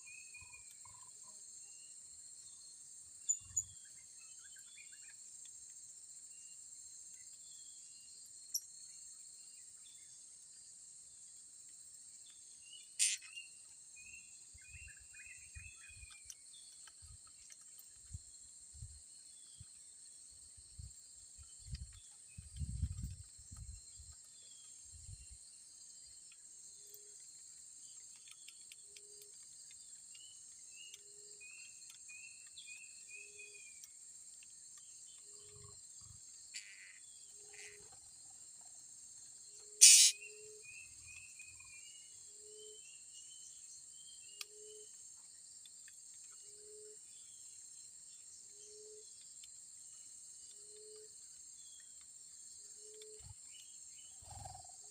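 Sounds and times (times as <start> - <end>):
high-pitched insect chorus: 0.0 - 54.9
birds chirping: 12.7 - 17.9, 39.8 - 42.2
loud sharp bird call: 39.8 - 40.4.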